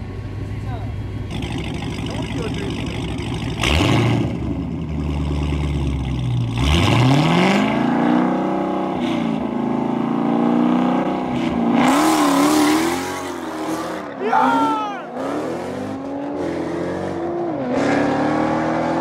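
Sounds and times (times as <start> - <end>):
car engines running at low revs: 0.0 - 7.9
car engine revving and accelerating: 1.3 - 19.0.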